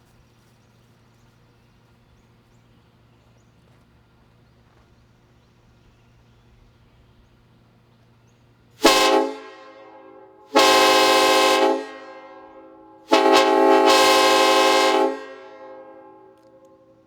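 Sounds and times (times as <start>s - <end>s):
train horn chord blasts: 8.8s - 17.0s.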